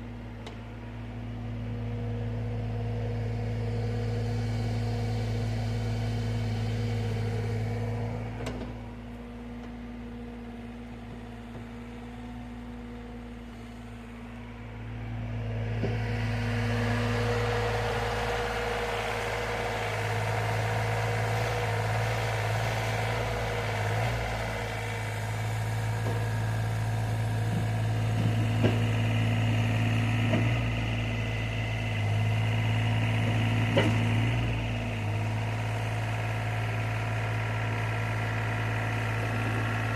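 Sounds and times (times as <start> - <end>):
engine running: 0.0 - 39.9.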